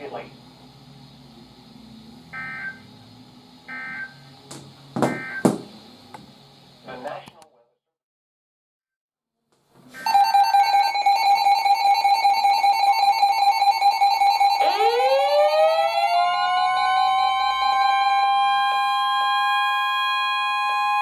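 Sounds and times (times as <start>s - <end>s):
siren sweeping up in pitch: 2.3s - 2.9s, 3.7s - 4.2s, 5.1s - 5.4s, 10.0s - 21.0s
warbling two-pitch alarm: 2.3s - 2.9s, 3.7s - 4.2s, 5.1s - 5.5s, 10.0s - 21.0s.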